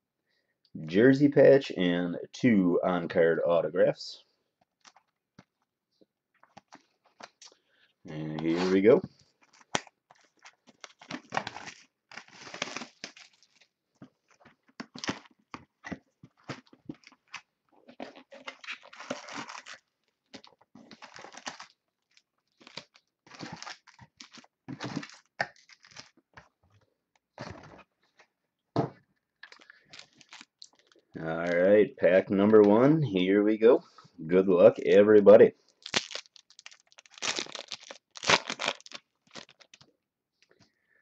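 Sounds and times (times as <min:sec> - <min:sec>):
wrapping torn and crinkled: 0:08.4 - 0:15.6, 0:16.3 - 0:26.3, 0:29.5 - 0:31.1, 0:35.6 - 0:39.9
cardboard and card packs rustling: 0:08.4 - 0:26.7, 0:29.5 - 0:31.1, 0:35.6 - 0:39.8.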